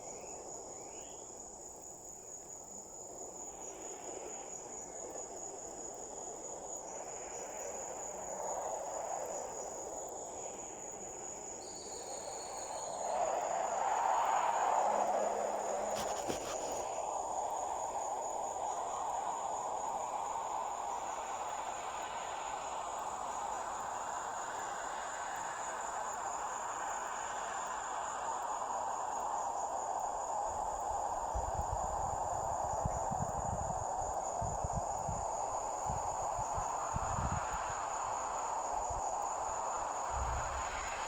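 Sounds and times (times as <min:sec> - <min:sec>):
crickets trilling: 0:00.0 - 0:41.0
steady rushing hiss: 0:00.0 - 0:41.0.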